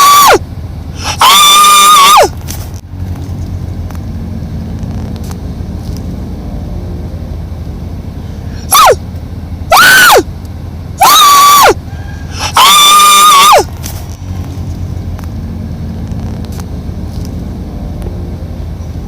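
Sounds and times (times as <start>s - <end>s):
pet animal calling loudly: 11.0s - 13.7s.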